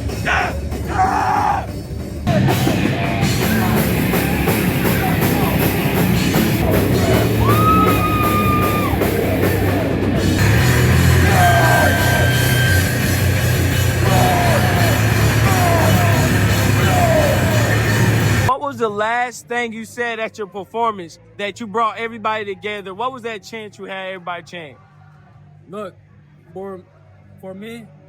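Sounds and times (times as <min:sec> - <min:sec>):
drum kit: 0:00.0 - 0:18.5
distorted electric guitars: 0:01.7 - 0:18.5
guitar squeals: 0:02.3 - 0:18.5.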